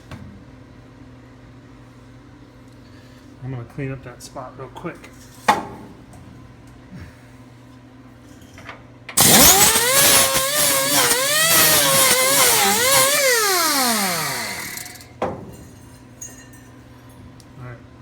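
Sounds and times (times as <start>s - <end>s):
angle grinder whining: 9.2s - 15.2s.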